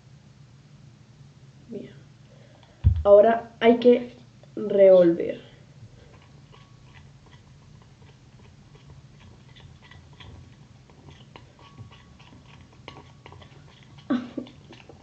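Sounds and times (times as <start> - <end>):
spoon stirring sticky paste: 5.9 - 15.0.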